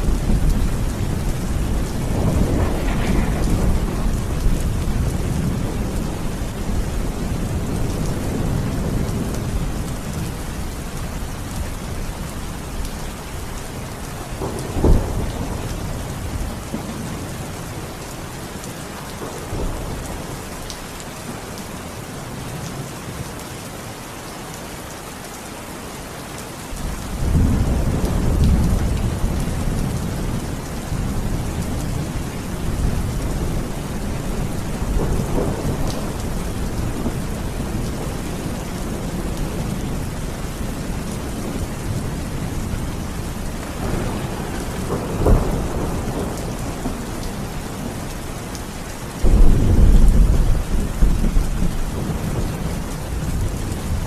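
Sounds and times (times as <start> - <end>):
thunder rumbling: 0.0 - 12.9, 14.2 - 17.6, 26.9 - 54.0
steady rain falling: 0.0 - 54.0
loud thunder clap: 1.7 - 6.0, 49.2 - 52.2.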